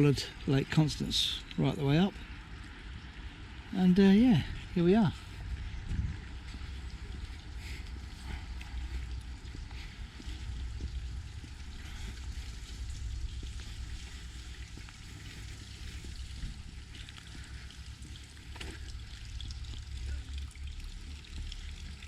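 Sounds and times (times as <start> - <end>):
steady rushing outdoor noise: 0.0 - 22.0
wind buffeting microphone: 4.3 - 18.4.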